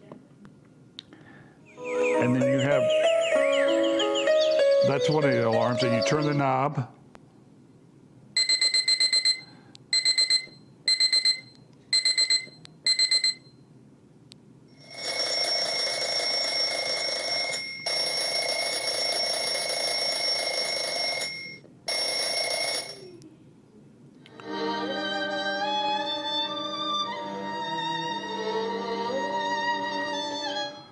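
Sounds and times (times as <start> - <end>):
bell-type alarm ringing: 8.4 - 13.5, 14.8 - 23.1
rapid high alarm beeps: 8.4 - 13.6.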